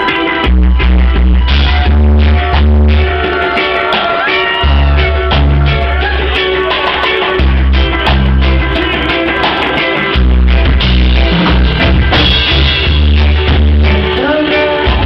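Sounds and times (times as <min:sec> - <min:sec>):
heavy bass line: 0:00.0 - 0:15.0
live band playing: 0:00.0 - 0:15.0.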